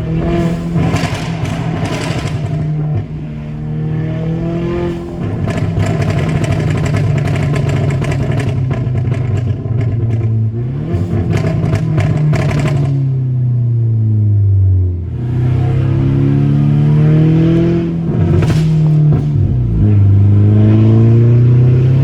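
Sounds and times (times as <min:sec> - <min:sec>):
exhaust pops and crackles: 0:00.0 - 0:03.6, 0:04.9 - 0:13.3, 0:17.5 - 0:20.3
car engine running: 0:00.0 - 0:22.0.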